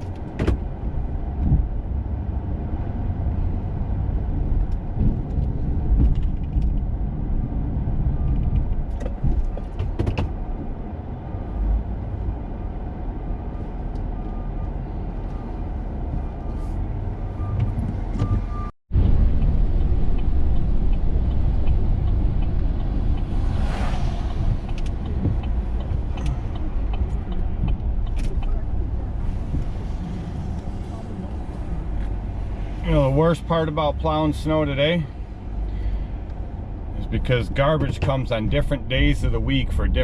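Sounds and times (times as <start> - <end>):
sharp knocks and clunks: 0.0 - 0.7, 5.0 - 6.8, 8.3 - 10.8, 24.2 - 28.6
truck engine and road rumble: 0.0 - 40.0.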